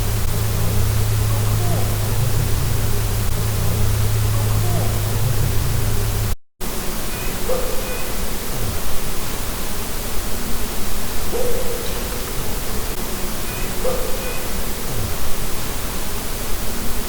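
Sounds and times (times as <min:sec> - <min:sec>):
faint low call: 0:00.0 - 0:06.4
heavy steady hiss: 0:00.0 - 0:17.0.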